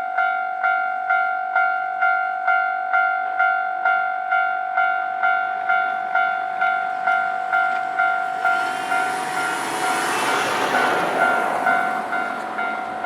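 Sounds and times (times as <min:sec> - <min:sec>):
train rushing past: 0:05.2 - 0:13.0.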